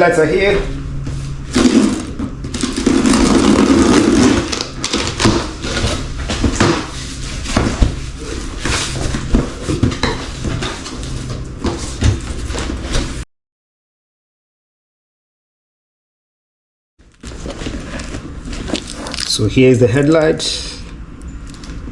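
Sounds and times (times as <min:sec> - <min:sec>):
packaging scraping: 0:01.6 - 0:06.7, 0:17.2 - 0:19.4
knocks clatters and rustles: 0:04.2 - 0:13.2.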